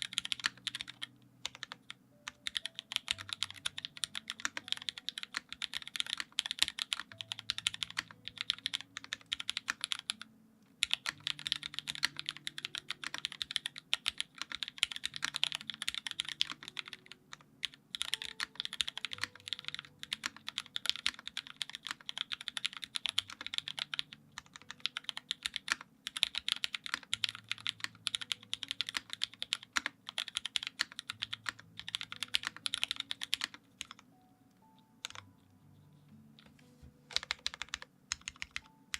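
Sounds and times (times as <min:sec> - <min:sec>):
fast mechanical keyboard typing: 0:00.0 - 0:10.2, 0:10.8 - 0:34.0, 0:35.0 - 0:35.3, 0:37.1 - 0:38.9
faint low tones: 0:31.4 - 0:38.9.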